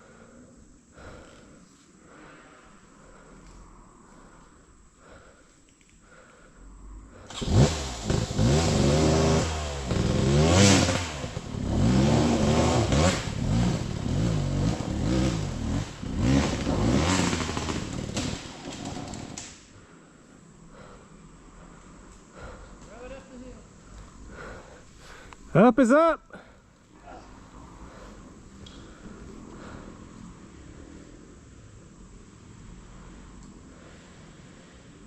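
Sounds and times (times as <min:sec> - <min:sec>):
dirt bike engine revving: 0:07.3 - 0:19.5.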